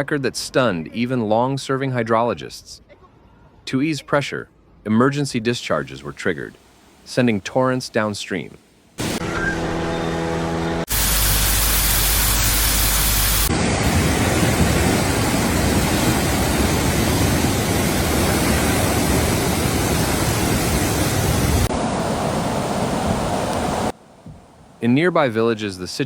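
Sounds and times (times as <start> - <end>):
water rushing: 5.6 - 10.2, 10.8 - 25.2.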